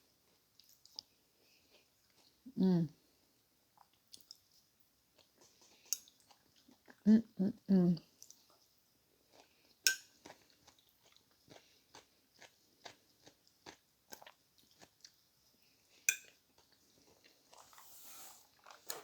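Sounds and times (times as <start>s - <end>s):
person chewing: 9.3s - 15.2s
soft rustle: 17.0s - 19.0s.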